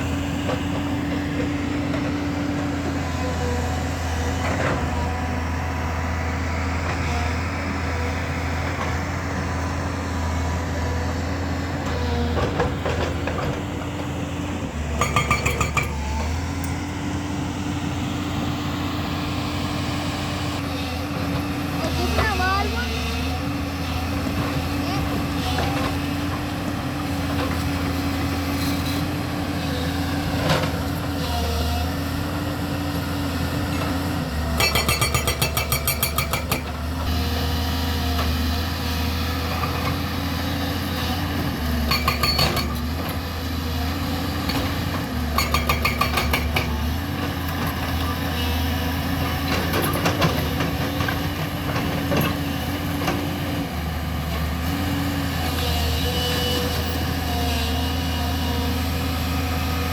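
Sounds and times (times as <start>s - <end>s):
excavator diesel engine running: 0.0s - 59.9s
hydraulic rock breaker hammering: 11.6s - 17.0s, 33.6s - 56.9s.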